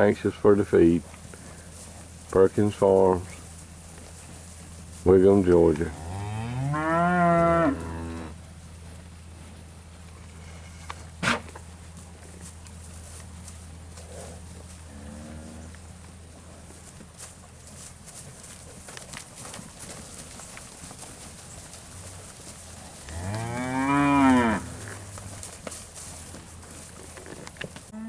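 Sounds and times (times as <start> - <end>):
cattle mooing: 5.7 - 8.4, 14.9 - 15.8, 22.8 - 25.4.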